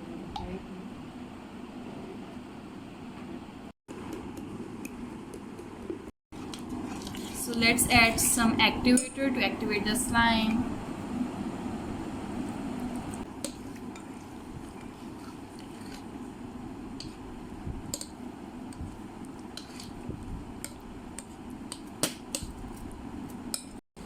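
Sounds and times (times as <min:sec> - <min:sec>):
slime squishing in a bowl: 0:06.4 - 0:07.6.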